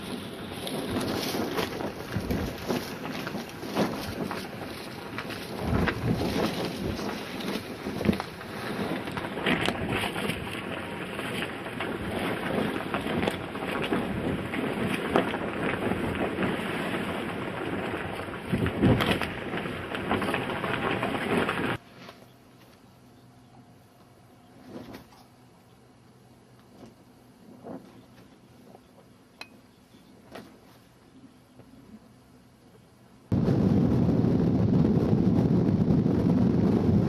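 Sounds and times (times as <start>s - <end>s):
strong wind buffeting microphone: 0.0s - 21.8s, 33.3s - 37.0s.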